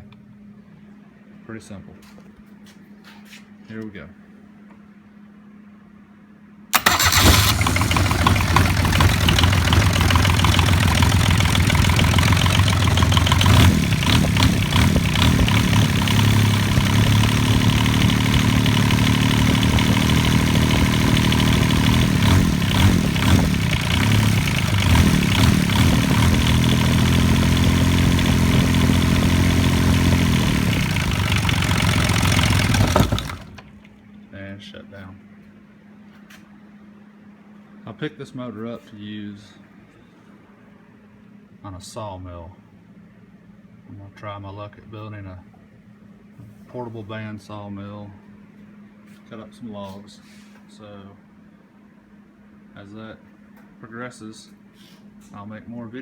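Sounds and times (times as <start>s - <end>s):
diesel engine starting and running: 6.7s - 34.0s.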